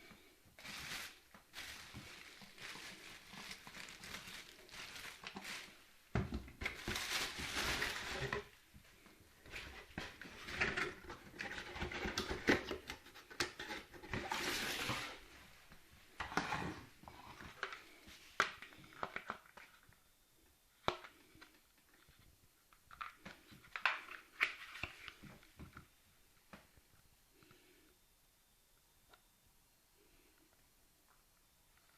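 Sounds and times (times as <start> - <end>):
packaging rustling: 0.6 - 5.9, 6.5 - 8.6, 9.4 - 15.3.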